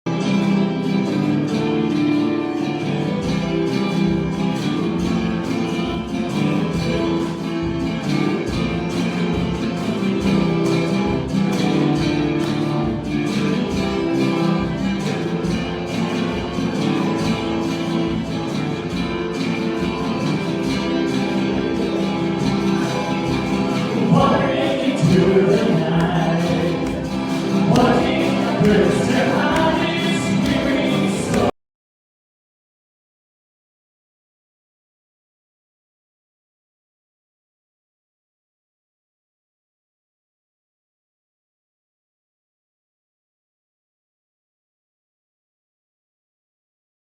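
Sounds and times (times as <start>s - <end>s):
guitar-led instrumental music: 0.1s - 31.5s
person singing: 23.8s - 31.6s.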